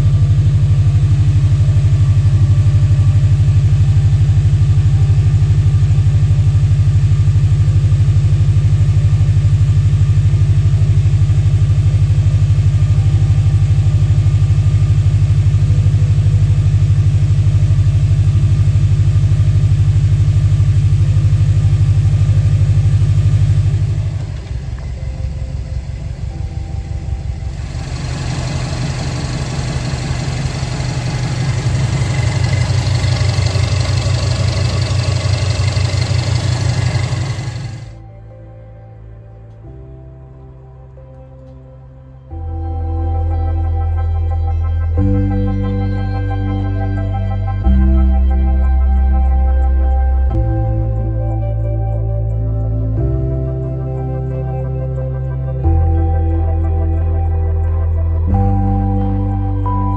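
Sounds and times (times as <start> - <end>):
car engine idling: 0.0 - 38.0.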